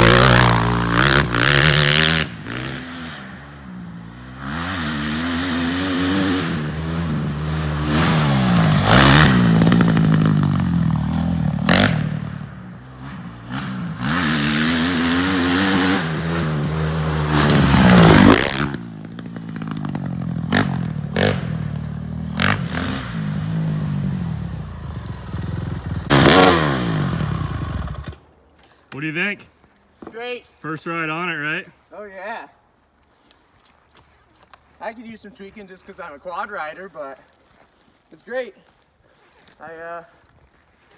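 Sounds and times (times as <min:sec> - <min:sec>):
motorcycle engine revving: 0:00.0 - 0:28.2.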